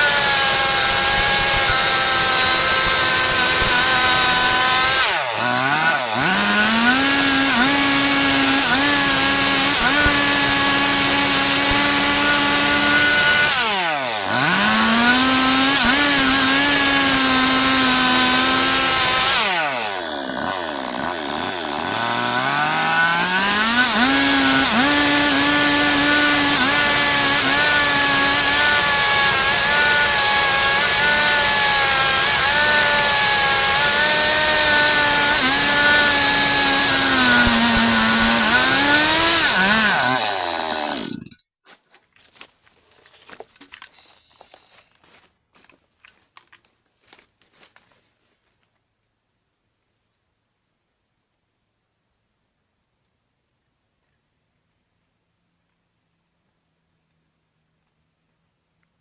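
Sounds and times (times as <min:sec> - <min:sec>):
chainsaw cutting log: 0:00.0 - 0:41.4.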